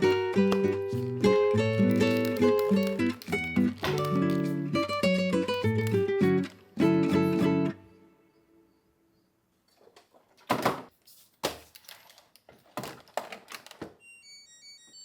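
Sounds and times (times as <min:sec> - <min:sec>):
hard objects clacking: 0:00.0 - 0:06.6.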